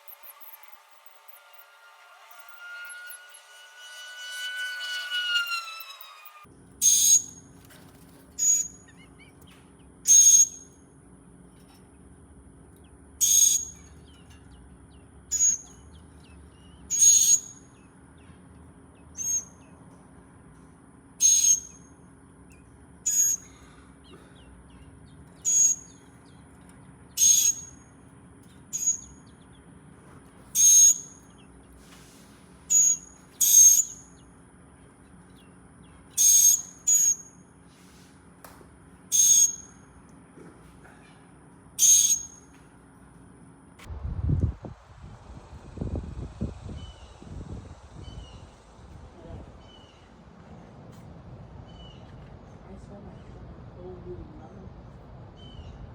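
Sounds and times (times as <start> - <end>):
low hum: 0.0 - 10.0
bird chirping: 13.2 - 17.9, 21.2 - 21.8, 27.2 - 27.8, 28.7 - 29.6, 32.7 - 34.2, 41.8 - 42.4.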